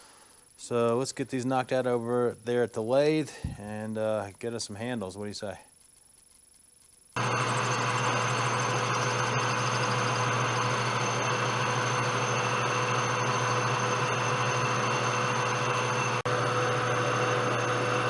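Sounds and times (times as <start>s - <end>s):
metal lathe running: 7.2s - 18.0s.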